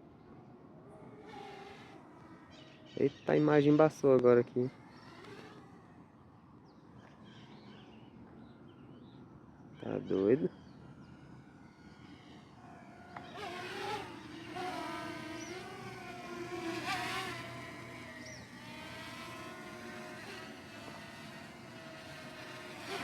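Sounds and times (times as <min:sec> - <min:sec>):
drone propellers buzzing: 0:00.9 - 0:02.6, 0:04.6 - 0:06.3, 0:09.9 - 0:23.0.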